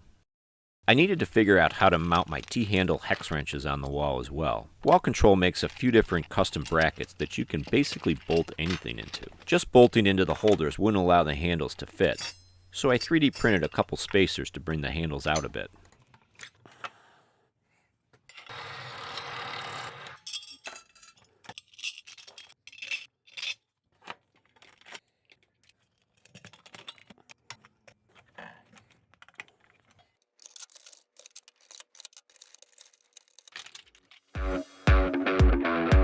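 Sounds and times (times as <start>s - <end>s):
metal tools clinking: 1.2s - 16.6s, 20.2s - 23.6s.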